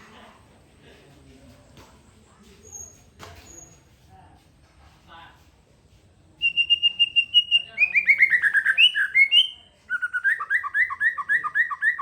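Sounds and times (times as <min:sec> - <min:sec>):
songbird singing: 0:06.4 - 0:12.0.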